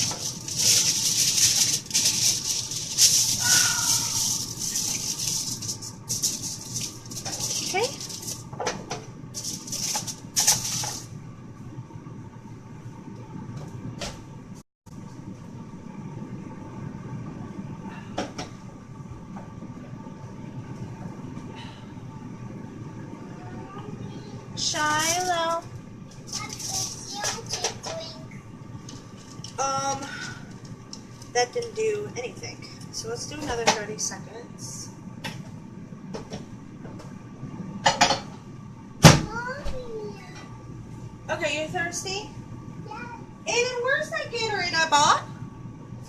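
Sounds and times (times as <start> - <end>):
aluminum foil crinkling: 0.0 - 8.5, 9.4 - 11.1, 26.2 - 27.5
microwave oven humming: 0.0 - 46.0.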